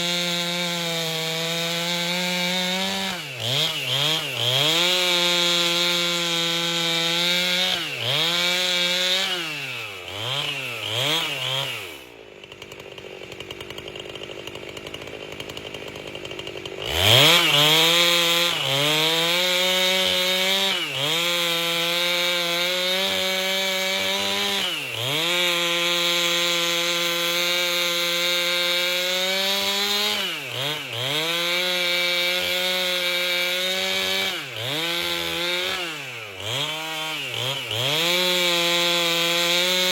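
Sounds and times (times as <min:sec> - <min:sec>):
chainsaw cutting log: 0:00.0 - 0:39.9.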